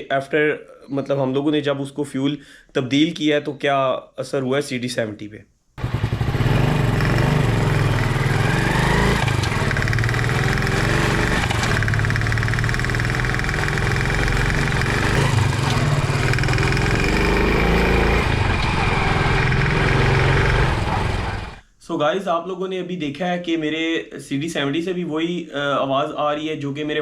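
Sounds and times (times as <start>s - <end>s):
motorcycle engine knocking tick: 9.5s - 10.4s, 11.6s - 15.2s.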